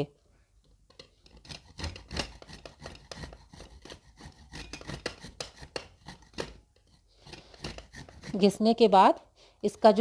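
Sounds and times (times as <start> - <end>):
ginger scraping on a grater: 1.2 - 8.8.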